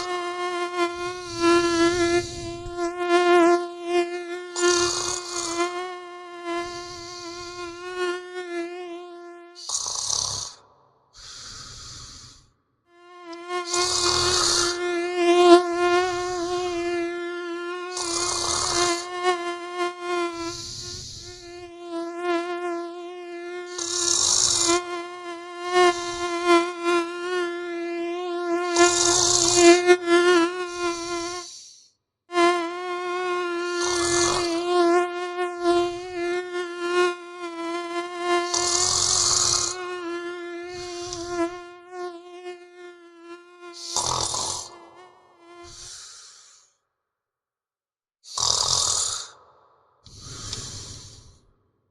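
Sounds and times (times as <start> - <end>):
mosquito whine: 0.0 - 46.7, 50.1 - 51.4
person snoring: 0.9 - 2.9, 4.5 - 5.8, 6.5 - 8.0, 9.6 - 12.5, 13.5 - 14.8, 16.0 - 16.8, 17.8 - 19.1, 20.3 - 21.5, 23.7 - 24.9, 25.9 - 26.4, 28.7 - 29.8, 30.6 - 31.9, 33.7 - 34.7, 38.4 - 39.9, 40.6 - 41.4, 43.7 - 46.8, 48.3 - 51.5.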